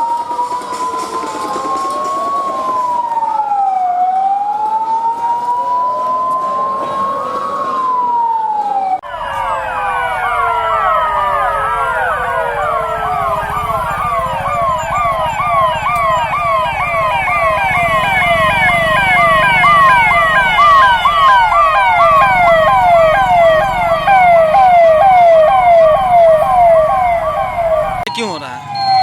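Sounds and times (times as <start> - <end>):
police sirens yelping: 0.0 - 29.0.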